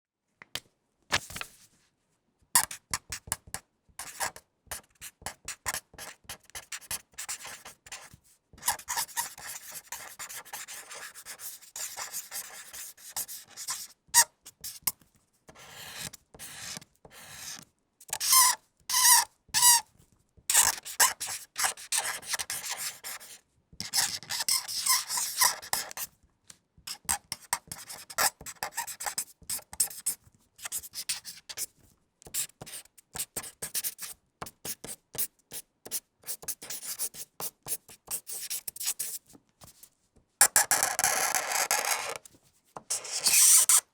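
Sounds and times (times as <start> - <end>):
marker squeaking on paper: 4.0 - 14.9, 15.6 - 19.9, 20.5 - 26.1, 26.9 - 31.6, 35.9 - 39.2, 40.4 - 42.2, 42.9 - 43.9.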